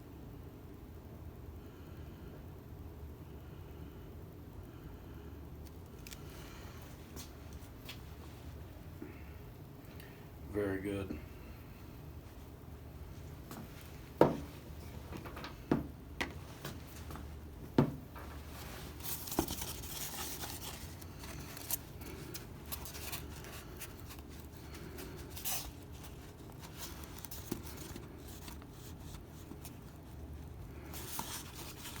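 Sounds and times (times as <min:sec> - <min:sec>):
rustling and scraping: 0:16.2 - 0:32.0.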